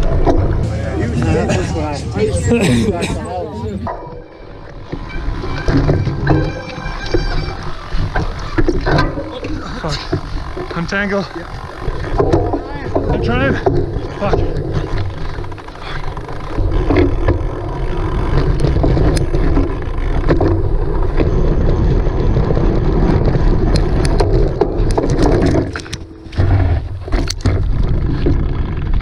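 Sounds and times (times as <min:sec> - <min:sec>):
bicycle rumbling and rattling: 0:00.0 - 0:29.0
wind on microphone: 0:16.5 - 0:29.0.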